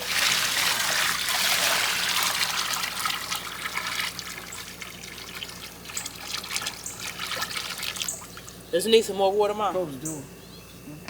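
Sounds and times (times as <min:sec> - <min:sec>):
water pouring into pool: 0:00.0 - 0:08.5
small water splashes: 0:00.0 - 0:08.6.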